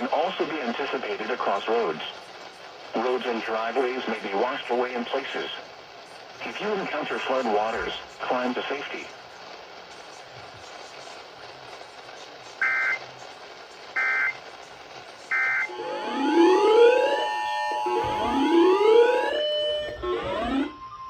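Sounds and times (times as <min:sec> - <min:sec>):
radio hiss: 0:00.0 - 0:20.7
digital data tone bursts: 0:12.6 - 0:13.0, 0:14.0 - 0:14.4, 0:15.3 - 0:20.8
rising whooping alarm tone: 0:15.3 - 0:21.0.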